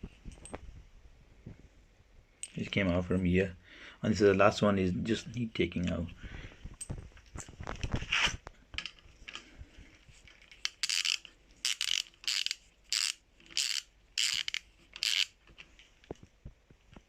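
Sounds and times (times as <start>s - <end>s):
ratchet wrench clicking: 10.6s - 15.3s.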